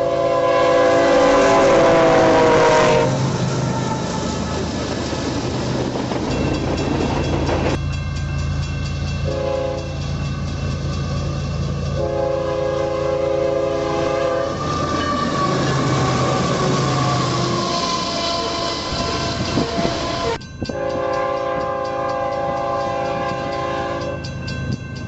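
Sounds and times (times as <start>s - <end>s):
locomotive air horn blasts: 0.0s - 4.2s, 9.2s - 10.1s, 11.8s - 24.2s
freight train rumbling past: 0.0s - 25.0s
diesel engine drone: 1.2s - 7.8s.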